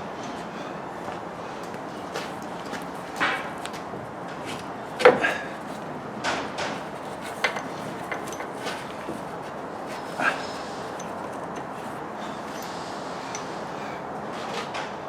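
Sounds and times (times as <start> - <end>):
tools and parts knocking: 2.0 - 12.8.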